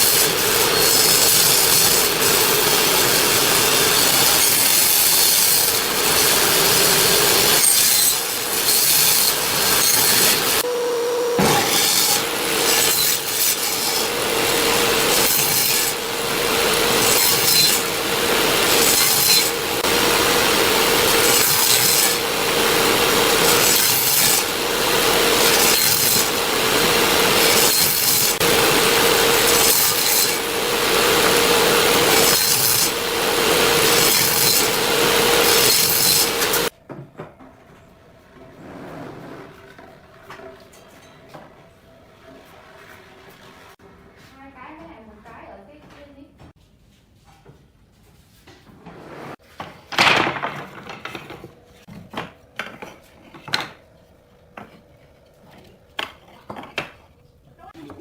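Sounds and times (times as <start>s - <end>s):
electric power tool motor hum: 0.0s - 36.7s
rasping sawing of wood: 0.0s - 36.7s.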